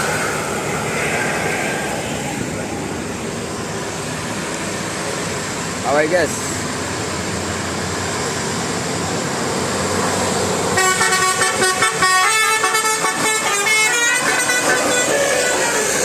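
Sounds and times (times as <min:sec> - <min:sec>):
road and engine noise: 0:00.0 - 0:16.0
multi-tone musical air horn melody: 0:10.8 - 0:16.0.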